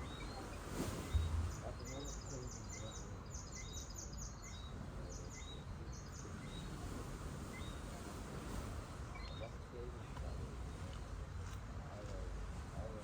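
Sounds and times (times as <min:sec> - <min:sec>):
gentle surf: 0:00.0 - 0:02.6, 0:06.3 - 0:13.0.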